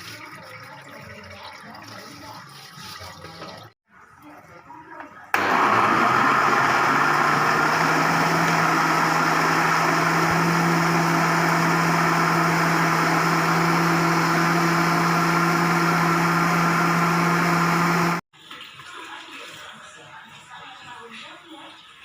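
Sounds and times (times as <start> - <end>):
motor humming: 5.4 - 18.2.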